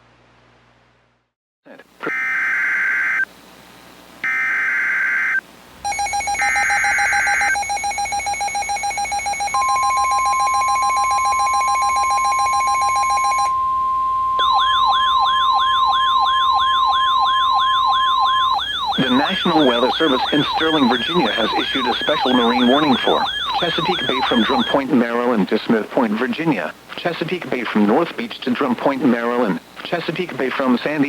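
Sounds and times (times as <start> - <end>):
screeching data bursts: 2.0 - 3.3, 4.2 - 13.5, 14.4 - 24.9
wailing siren-like tone: 4.2 - 8.6, 9.2 - 24.8
pulsing buzzer tone: 4.2 - 24.9
steady alert tone: 14.4 - 24.9.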